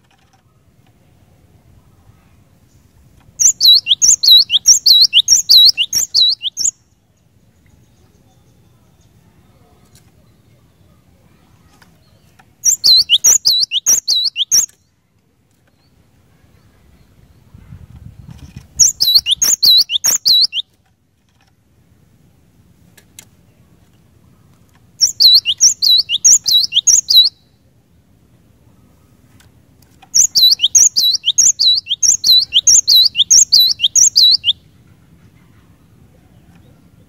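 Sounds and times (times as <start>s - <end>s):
bird singing whistled notes: 3.4s - 7.0s, 12.0s - 14.8s, 18.8s - 20.7s, 25.0s - 27.6s, 30.2s - 34.6s.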